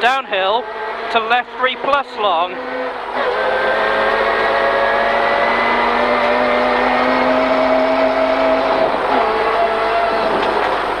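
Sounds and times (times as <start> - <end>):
rally car engine under hard throttle: 0.0 - 11.0.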